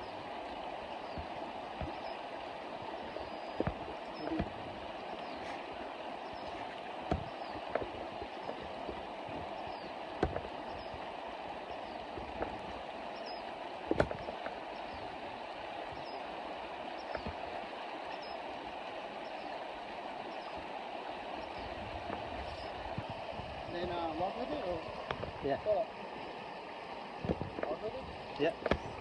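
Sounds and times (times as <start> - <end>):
creek water running: 0.0 - 29.0
sharp knocks and clicks: 3.5 - 4.6, 6.4 - 9.5, 10.2 - 11.0, 13.9 - 14.6, 17.1 - 17.4, 28.4 - 29.0.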